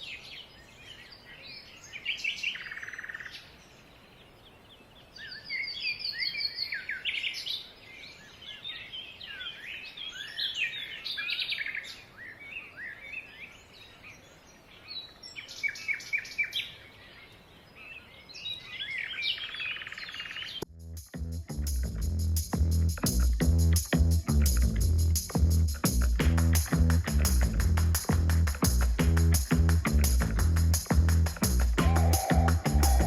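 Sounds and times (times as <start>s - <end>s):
songbirds singing: 0.0s - 20.7s, 30.8s - 33.0s
electronic music with heavy bass: 20.7s - 33.0s.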